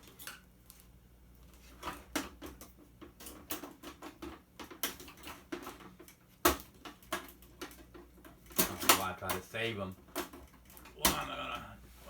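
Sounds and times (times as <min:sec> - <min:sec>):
clicks and taps of plastic and metal: 0:01.8 - 0:11.2.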